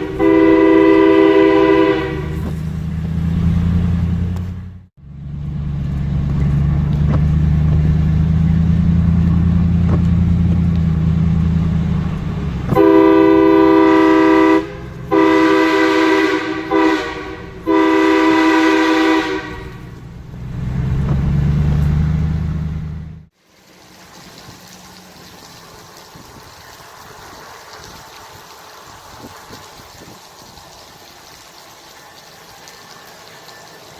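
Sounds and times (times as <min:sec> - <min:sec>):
train-style air horn blasts: 0:00.0 - 0:02.6, 0:12.7 - 0:20.0
truck engine drone: 0:00.0 - 0:23.3.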